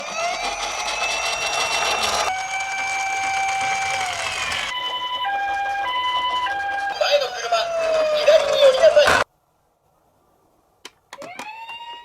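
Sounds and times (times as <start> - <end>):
wailing toy siren: 0.0 - 9.2, 11.2 - 12.0
two-tone hi-lo siren: 0.1 - 8.1.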